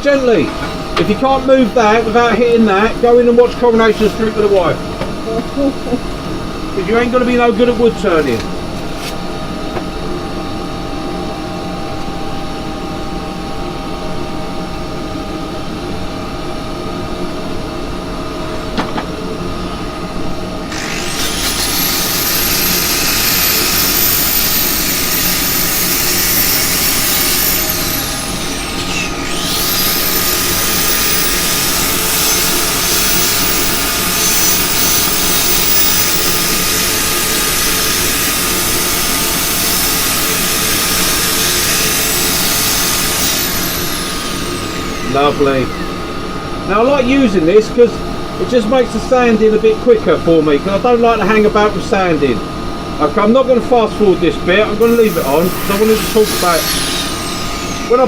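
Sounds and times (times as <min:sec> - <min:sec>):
power drill whining: 0:20.6 - 0:46.3, 0:54.8 - 0:58.0
wood lathe running: 0:20.6 - 0:47.1, 0:54.8 - 0:58.0.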